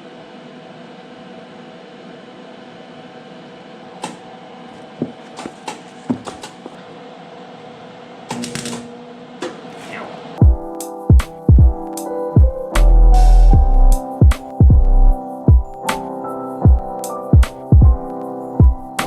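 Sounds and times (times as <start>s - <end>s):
music with a beat: 10.4s - 19.0s.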